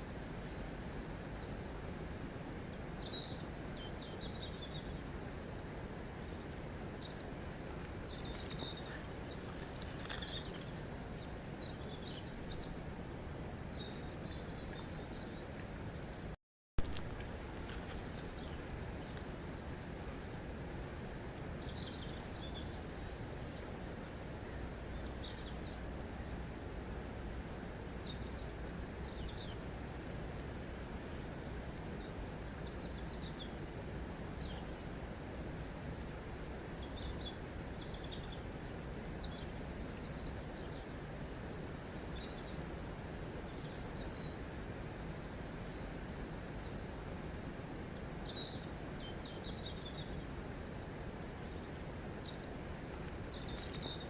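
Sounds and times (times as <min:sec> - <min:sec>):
small birds chirping: 0:05.7 - 0:16.3, 0:47.6 - 0:54.0.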